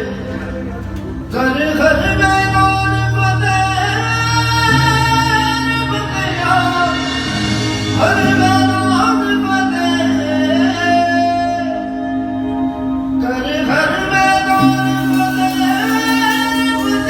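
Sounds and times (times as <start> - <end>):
low bass drone and instruments: 0.0 - 17.0.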